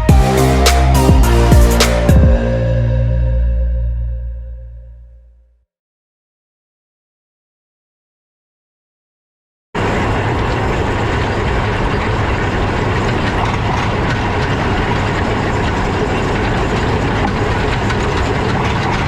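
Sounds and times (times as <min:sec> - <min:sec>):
heavy farm machinery running: 0:00.0 - 0:03.4, 0:09.8 - 0:19.0.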